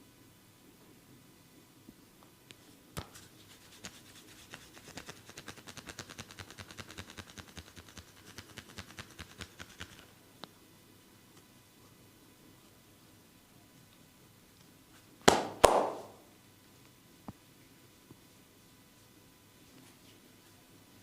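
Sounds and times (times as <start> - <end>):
hands slapping on skin: 15.3 - 16.2.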